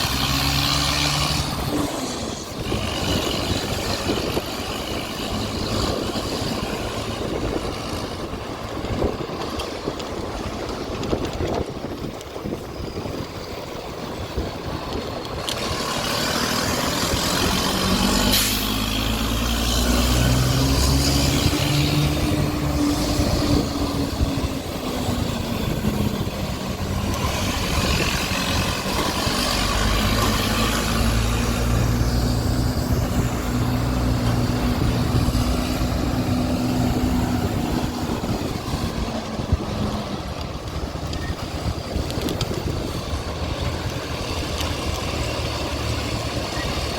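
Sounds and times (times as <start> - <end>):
coach diesel engine accelerating: 0.0 - 46.9.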